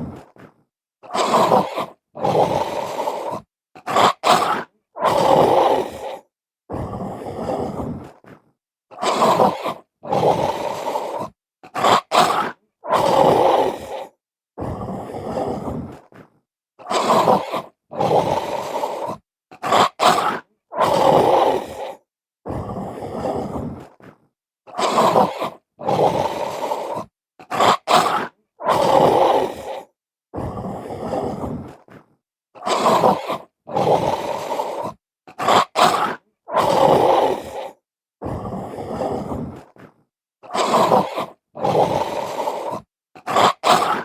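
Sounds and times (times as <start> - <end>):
animal growling: 0.0 - 44.0
animal barking: 1.1 - 6.1, 9.0 - 13.9, 16.8 - 21.8, 24.7 - 29.8, 32.6 - 37.7, 40.5 - 44.0.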